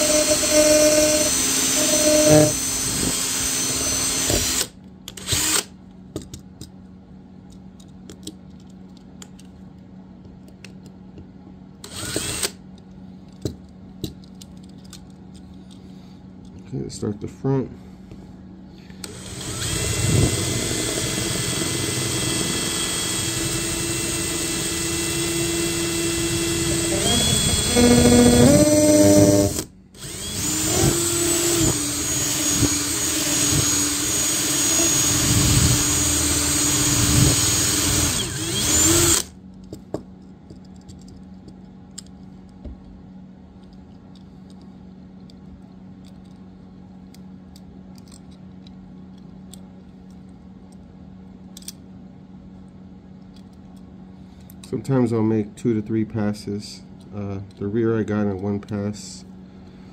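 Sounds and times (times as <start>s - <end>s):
electric drill drilling: 0.0s - 5.7s, 11.9s - 12.5s, 19.1s - 39.3s.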